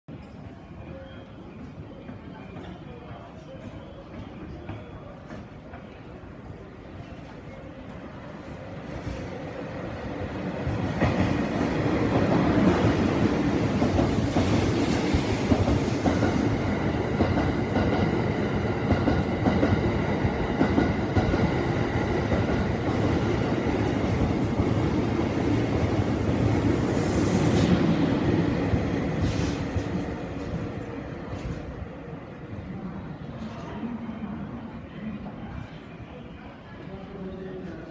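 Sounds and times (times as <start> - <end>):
brief high hiss: 26.9 - 27.8.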